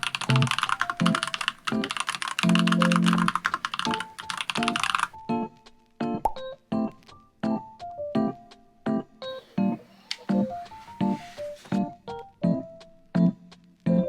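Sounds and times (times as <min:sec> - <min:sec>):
mechanical keyboard typing: 0:00.0 - 0:05.2
piano music: 0:00.0 - 0:13.3.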